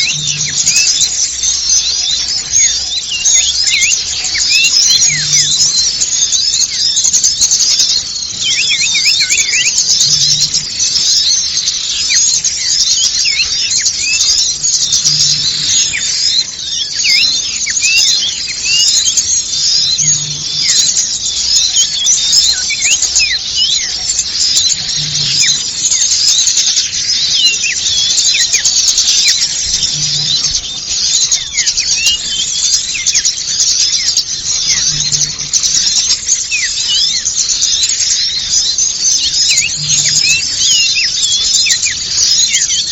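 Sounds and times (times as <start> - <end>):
songbirds twittering and chirping: 0.0 - 42.9.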